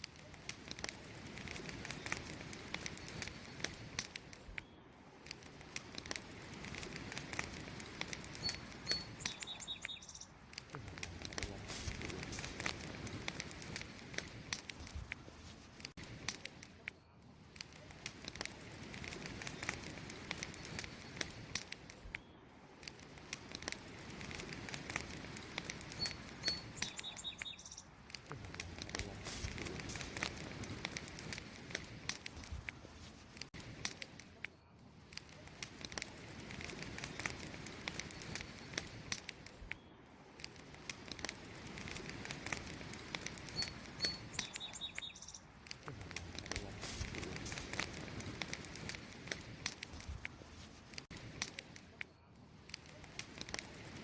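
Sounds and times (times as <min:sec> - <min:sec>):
campfire crackling and popping: 0:00.0 - 0:54.0
faint bird chirp: 0:08.3 - 0:10.4, 0:22.1 - 0:22.6, 0:25.9 - 0:28.0, 0:43.5 - 0:45.5.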